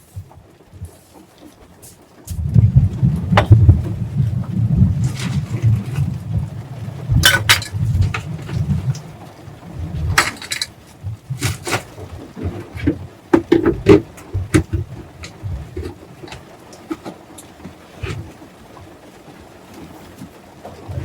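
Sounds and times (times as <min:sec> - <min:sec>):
low rumble: 0:02.3 - 0:12.9
pots and pans clinking: 0:07.2 - 0:09.0, 0:10.1 - 0:10.8.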